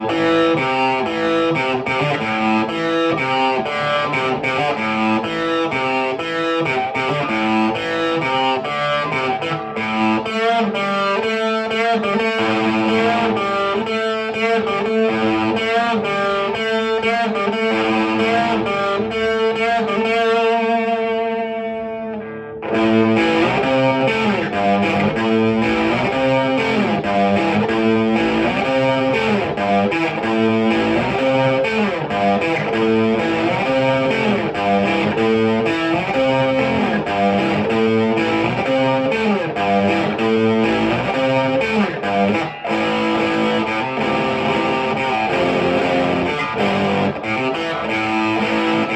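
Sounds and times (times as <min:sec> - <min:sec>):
distorted electric guitar riffs: 0:00.0 - 0:48.9.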